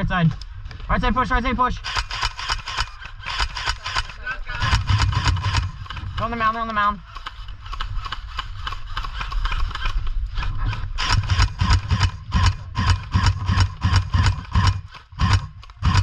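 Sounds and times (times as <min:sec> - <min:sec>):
airsoft guns firing: 0:01.8 - 0:06.5, 0:11.0 - 0:16.0.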